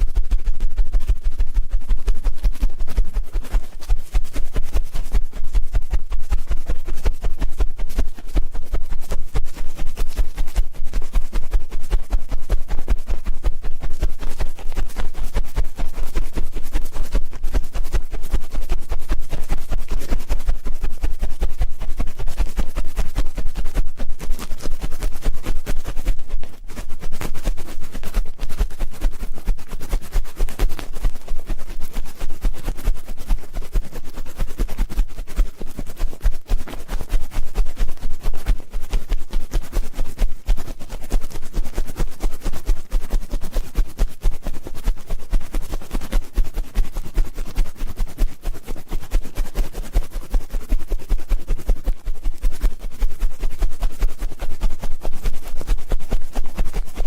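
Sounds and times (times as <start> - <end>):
ear pick scraping microphone: 0.0 - 34.1.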